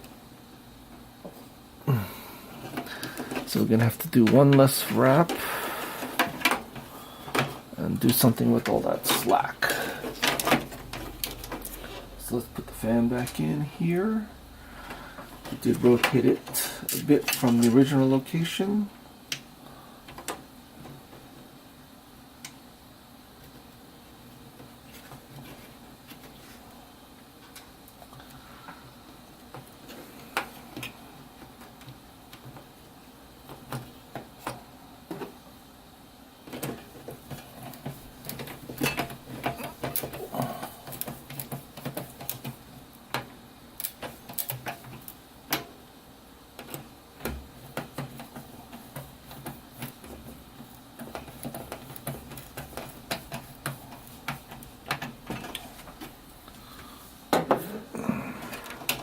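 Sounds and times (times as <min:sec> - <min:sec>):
plastic fan handling clicks and rattles: 0:06.0 - 0:12.0, 0:14.8 - 0:17.8, 0:19.3 - 0:21.4, 0:27.4 - 0:32.8, 0:33.4 - 0:35.4, 0:36.4 - 0:45.8, 0:46.5 - 0:56.6, 0:58.5 - 0:59.0.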